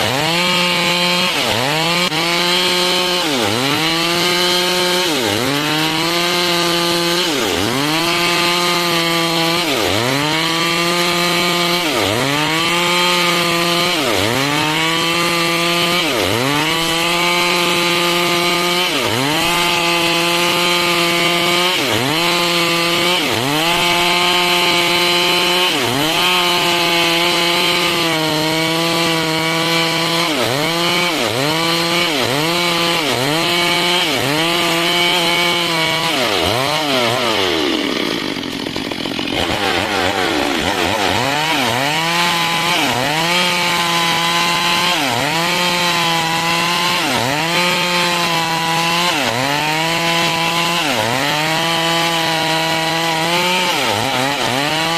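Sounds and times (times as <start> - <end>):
chainsaw cutting wood: 0.0 - 54.9.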